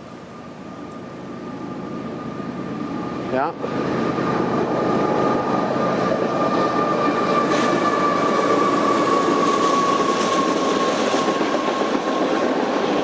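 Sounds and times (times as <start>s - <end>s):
train wheels rumbling on rails: 1.9s - 13.0s
train clank: 7.4s - 12.1s.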